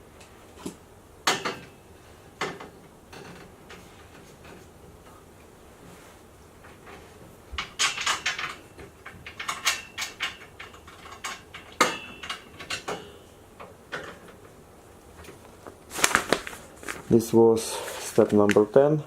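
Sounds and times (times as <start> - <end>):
metal parts clinking and knocking: 7.6 - 13.3.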